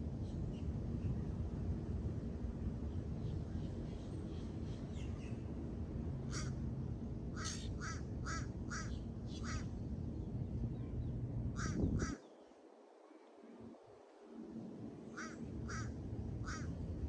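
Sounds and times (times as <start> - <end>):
low rushing noise: 0.0 - 17.0
duck quacking: 7.4 - 9.7, 15.2 - 16.7.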